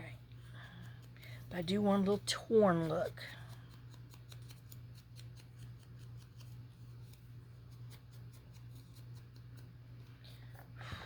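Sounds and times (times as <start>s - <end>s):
steady low hum: 0.0s - 11.0s
paper crackling and snipping: 3.4s - 9.6s.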